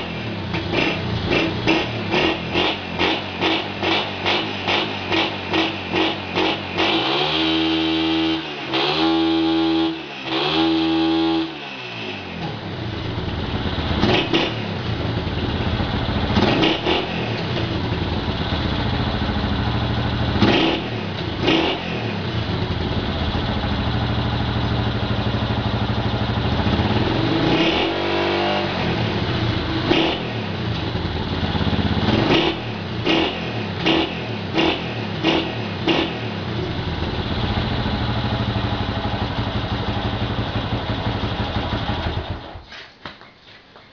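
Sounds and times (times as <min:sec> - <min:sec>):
motorcycle engine revving: 0:00.0 - 0:42.7.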